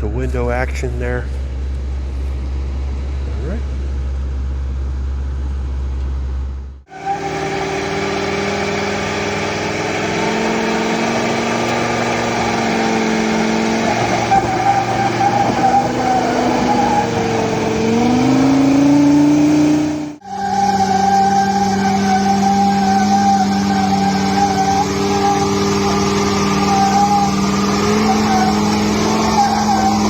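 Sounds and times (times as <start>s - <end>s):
low hum of truck driving: 0.0s - 30.0s
truck engine revving under load: 6.8s - 30.0s.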